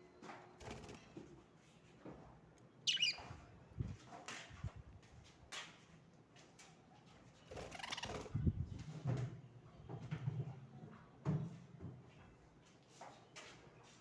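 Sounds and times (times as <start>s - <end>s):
parrots moving and rustling: 0.2s - 10.5s.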